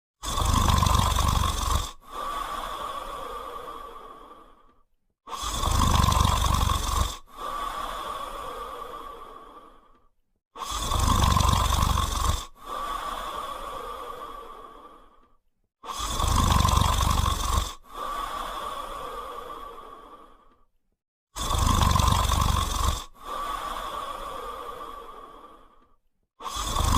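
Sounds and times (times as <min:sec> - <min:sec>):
dog snoring: 0:00.2 - 0:02.8, 0:05.3 - 0:08.0, 0:10.6 - 0:13.3, 0:15.8 - 0:19.2, 0:21.4 - 0:23.8, 0:26.4 - 0:26.9.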